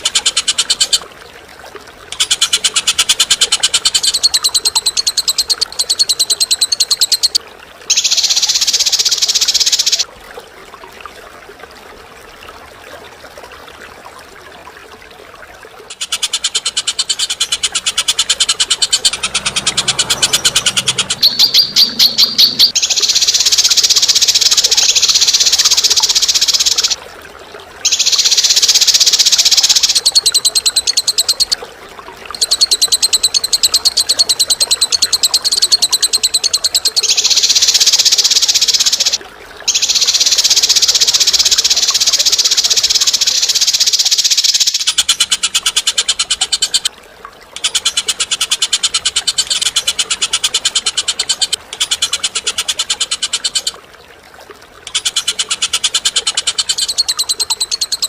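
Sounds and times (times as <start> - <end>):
cage bird chattering trills: 2.2 - 10.0, 15.9 - 27.0, 32.4 - 46.9
buzzy bird calls: 15.9 - 27.0.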